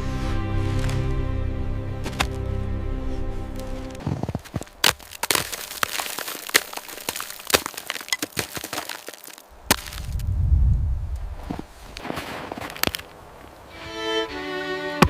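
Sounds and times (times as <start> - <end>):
background music: 0.0 - 4.2, 13.1 - 15.0
sharp cracks and crunches: 2.0 - 2.4, 4.0 - 10.3, 11.2 - 13.2.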